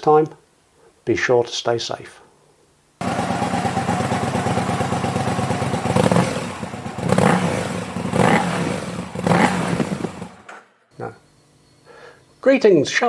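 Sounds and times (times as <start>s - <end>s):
motorcycle engine running: 3.0s - 10.5s.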